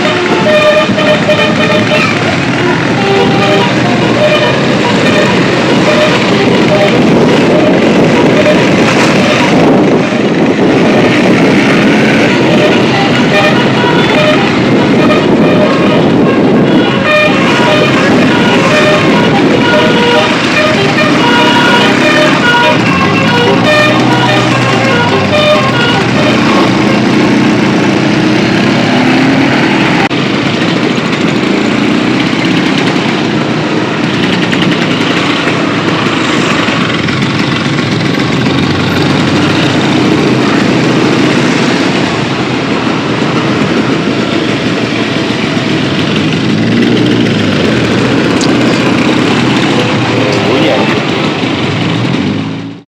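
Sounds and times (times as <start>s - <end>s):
road noise: 0.0s - 52.9s
vehicle engines revving: 0.0s - 52.9s.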